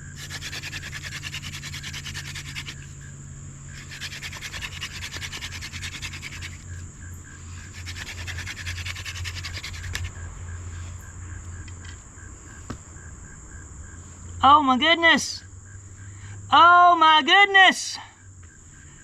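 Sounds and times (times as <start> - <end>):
wooden spindle rasping on board: 0.0 - 3.0, 3.8 - 6.8, 7.6 - 10.2
crickets chirping: 0.0 - 19.0.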